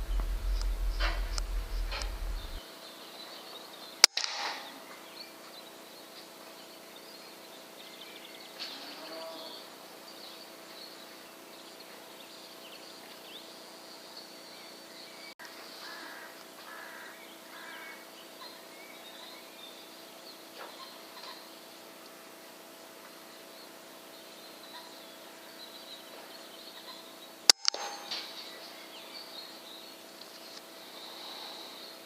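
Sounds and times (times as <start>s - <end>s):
air rifle shot: 0.0s - 2.6s, 4.0s - 4.7s
faint chirps and squeaks: 0.0s - 3.9s, 20.6s - 21.6s, 25.6s - 29.6s.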